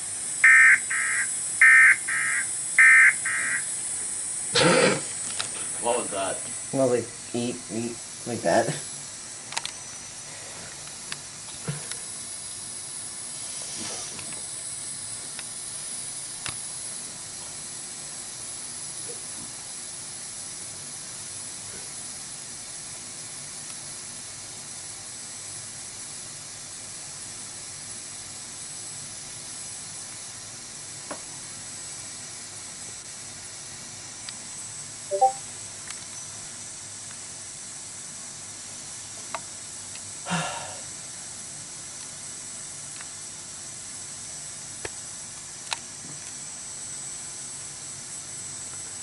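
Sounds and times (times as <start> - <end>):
radio static hiss: 0.0 - 12.5, 13.2 - 15.8.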